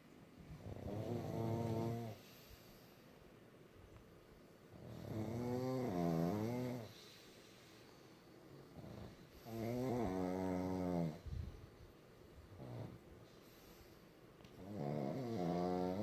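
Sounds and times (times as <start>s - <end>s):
dogs snoring: 0.5s - 2.8s, 4.7s - 7.3s, 8.5s - 11.3s, 12.4s - 16.0s.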